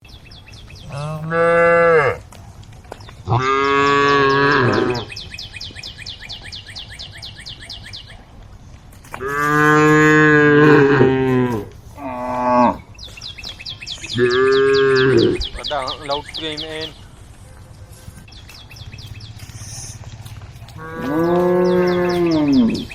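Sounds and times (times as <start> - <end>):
cows mooing: 0.9 - 2.2, 3.3 - 5.2, 9.2 - 12.9, 14.1 - 15.6, 20.6 - 22.9.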